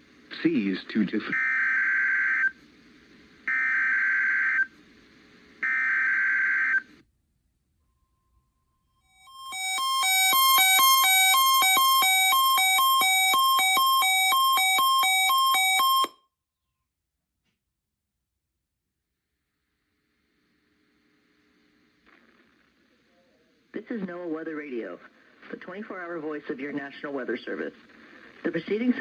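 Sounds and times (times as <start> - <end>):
harsh buzzing data tone: 9.3 - 16.1
two-pitch electronic alarm beeping: 9.3 - 16.2.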